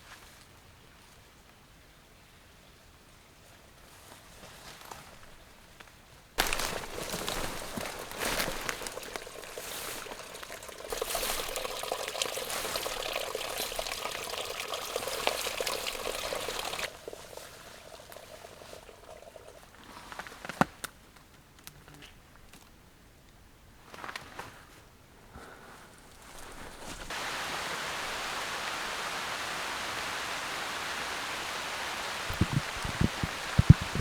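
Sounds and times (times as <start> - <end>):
water pouring: 6.4 - 20.0, 32.2 - 34.0
faint water trickle: 6.4 - 20.3, 27.9 - 34.0.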